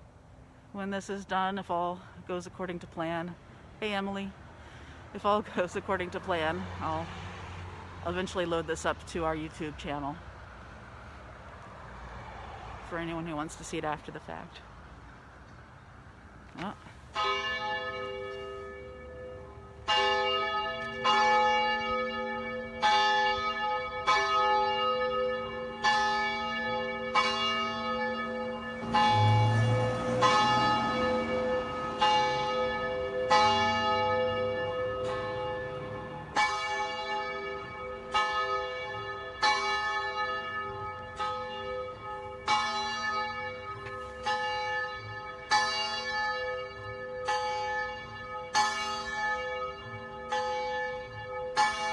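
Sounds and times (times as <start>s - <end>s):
church bell ringing: 17.2s - 51.9s.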